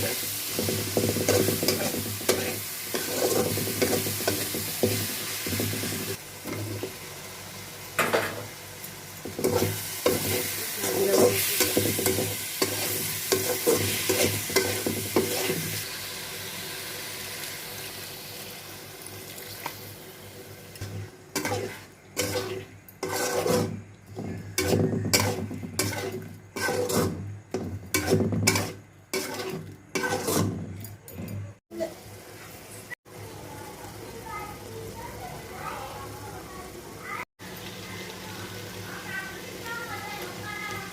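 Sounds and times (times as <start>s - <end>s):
spoon stirring and scraping pan: 0.0s - 7.1s, 8.0s - 15.9s, 20.8s - 31.6s
food sizzling in oil: 0.0s - 30.8s, 31.6s - 40.9s.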